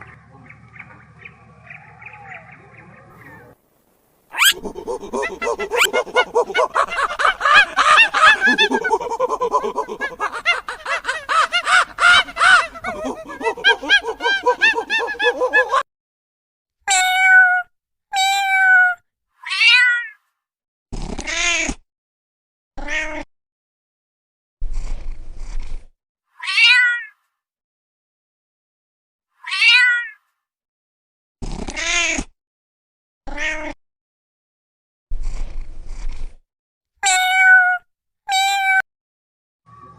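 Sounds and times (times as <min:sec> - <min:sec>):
cat meowing: 0:04.3 - 0:06.0, 0:16.9 - 0:20.1, 0:37.0 - 0:38.8
flock of birds calling: 0:04.3 - 0:15.8.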